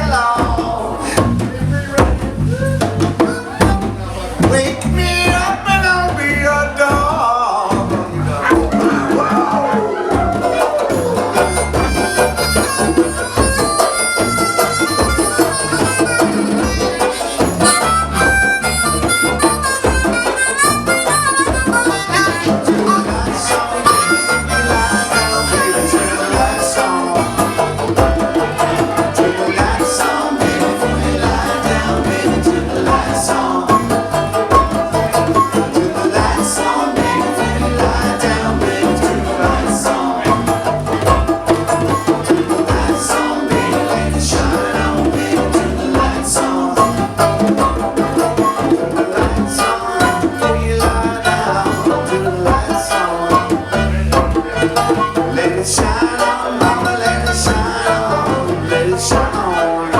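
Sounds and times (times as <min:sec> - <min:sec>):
acoustic guitar: 0:00.0 - 0:59.9
repeating bass line: 0:07.7 - 0:59.9
harmonica playing quick runs: 0:08.4 - 0:51.0.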